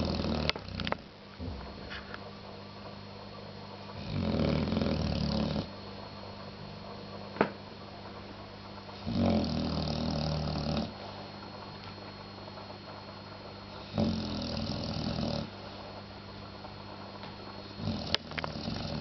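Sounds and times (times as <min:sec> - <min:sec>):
rumbling snores: 0:00.0 - 0:01.0, 0:04.0 - 0:05.7, 0:09.0 - 0:11.0, 0:13.8 - 0:15.6, 0:17.8 - 0:19.0.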